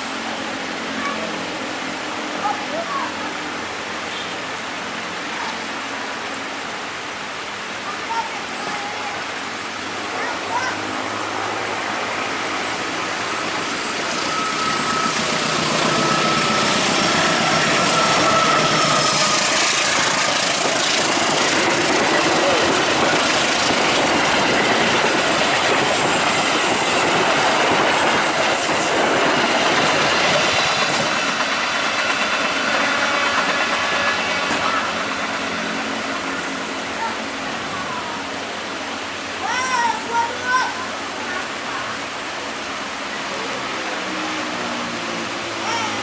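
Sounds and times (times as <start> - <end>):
train wheels clattering on rails: 8.1 - 37.4
faint thin squeal: 10.2 - 19.4.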